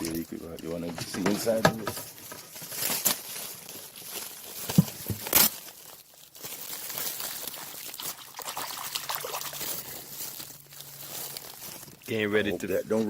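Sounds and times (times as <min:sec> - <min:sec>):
water pouring and trickling: 0:07.0 - 0:10.0.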